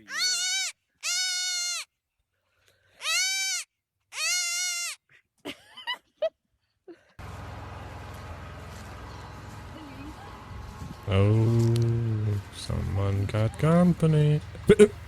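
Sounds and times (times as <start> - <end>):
high-pitched animal calls: 0.0 - 1.9, 3.0 - 5.0.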